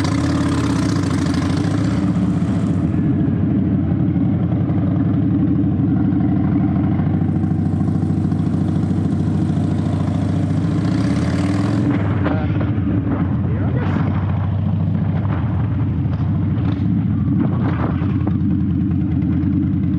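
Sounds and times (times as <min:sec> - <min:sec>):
motorcycle engine running: 0:00.0 - 0:19.9.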